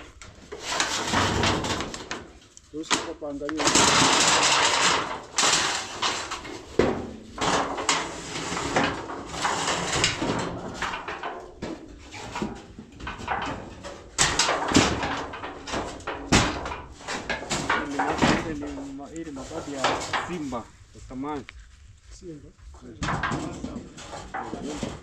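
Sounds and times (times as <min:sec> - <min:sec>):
knocks and bangs of tools: 0:00.0 - 0:20.7, 0:22.8 - 0:25.0.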